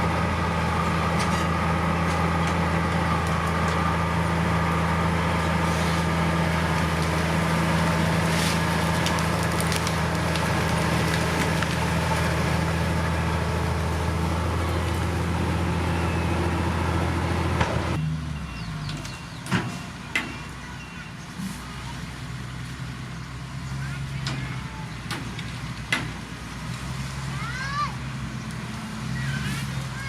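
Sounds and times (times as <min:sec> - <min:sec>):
heavy diesel engine droning: 0:00.0 - 0:30.0.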